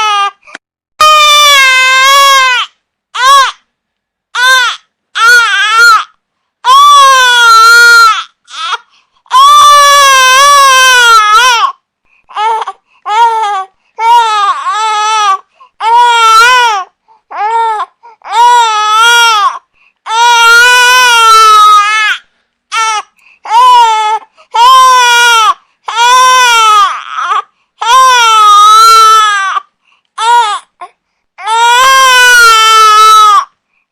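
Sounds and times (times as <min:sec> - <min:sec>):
infant crying: 0:00.0 - 0:00.4, 0:01.0 - 0:03.6, 0:04.4 - 0:33.5.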